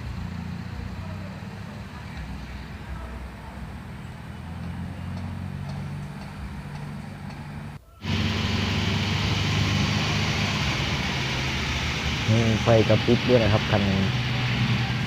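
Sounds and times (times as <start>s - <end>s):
truck engine running: 0.0s - 15.0s
hiss: 8.0s - 15.0s.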